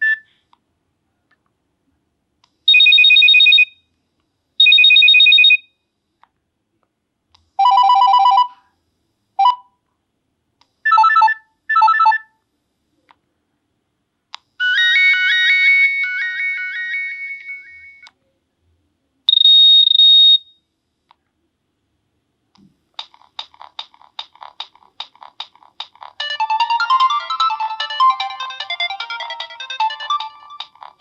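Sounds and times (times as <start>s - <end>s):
ringtone melody: 7.6s - 8.6s, 10.9s - 12.2s, 26.2s - 31.0s
electronic alert tones: 10.9s - 12.2s, 19.3s - 20.4s.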